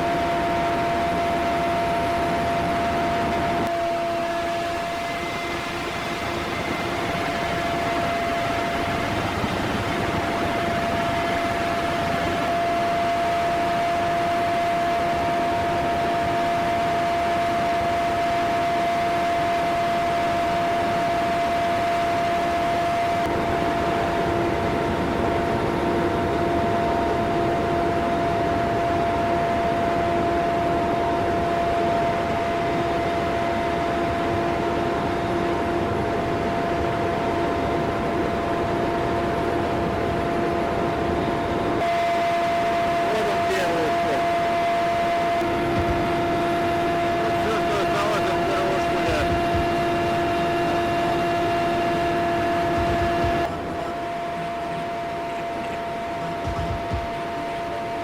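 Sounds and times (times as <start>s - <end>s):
aircraft engine noise: 0.0s - 27.2s, 41.8s - 58.0s
constant tone: 41.8s - 58.0s.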